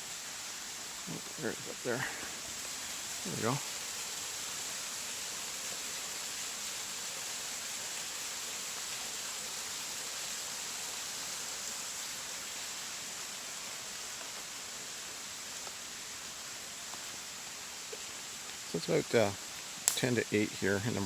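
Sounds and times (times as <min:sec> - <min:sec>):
running and falling water: 0:00.0 - 0:21.0.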